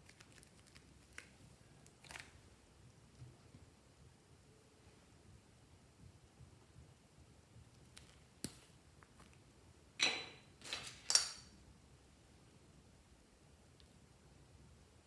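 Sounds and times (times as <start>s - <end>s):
crackly slime squishes: 0.0s - 2.4s.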